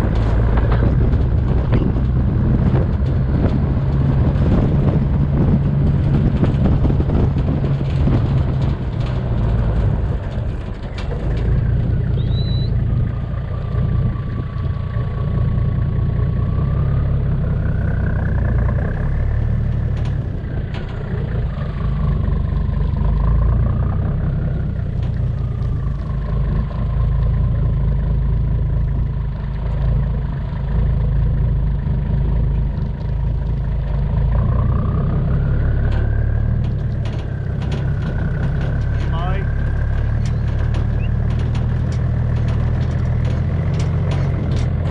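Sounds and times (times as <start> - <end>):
vehicle engine rumbling: 0.0 - 44.9.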